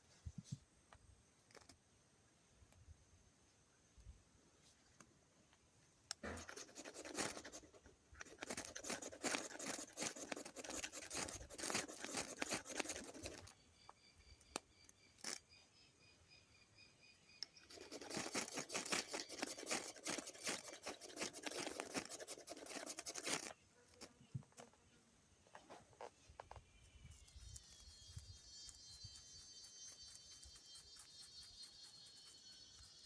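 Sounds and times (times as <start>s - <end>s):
knife scraping wood: 6.2s - 13.5s, 17.6s - 24.1s.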